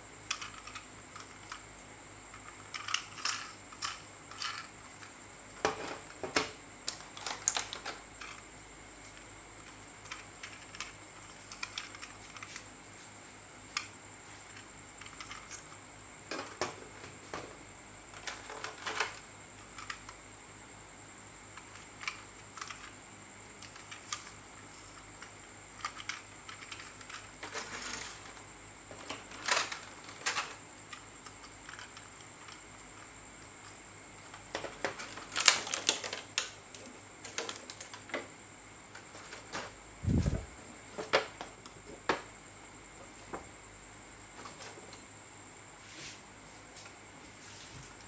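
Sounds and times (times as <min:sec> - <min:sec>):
toy and packaging clicking: 0:00.3 - 0:01.6, 0:02.3 - 0:04.7, 0:10.0 - 0:12.6, 0:21.6 - 0:23.0, 0:34.6 - 0:36.6
faint high whine: 0:38.4 - 0:41.0.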